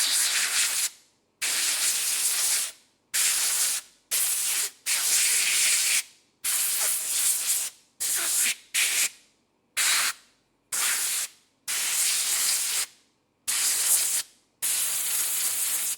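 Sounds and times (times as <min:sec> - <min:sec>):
compressed air hissing blasts: 0:13.5 - 0:15.9.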